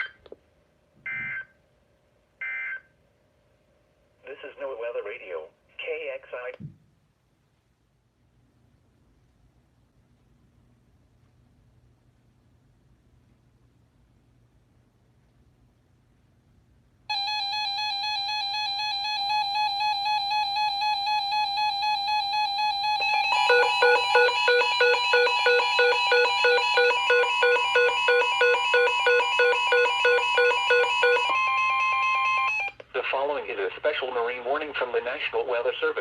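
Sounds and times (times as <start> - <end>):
pulsing electronic tune: 17.1 - 32.7
steady high alarm tone: 17.1 - 32.8.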